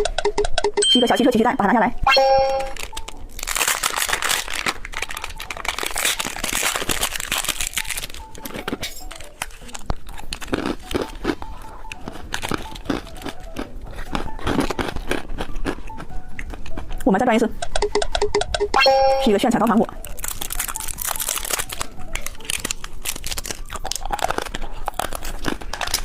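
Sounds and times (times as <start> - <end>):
plastic packaging crinkling: 2.6 - 15.8, 20.0 - 26.0.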